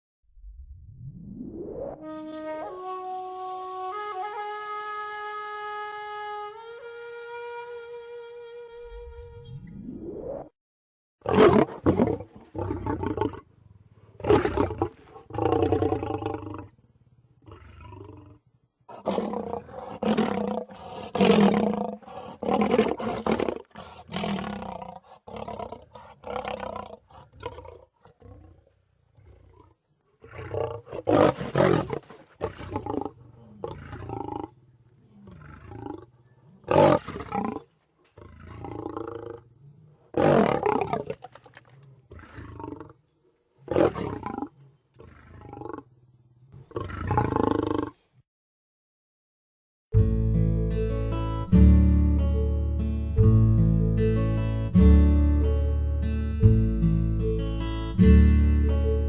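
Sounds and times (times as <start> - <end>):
lion growling and roaring: 11.2 - 43.0, 43.6 - 48.0.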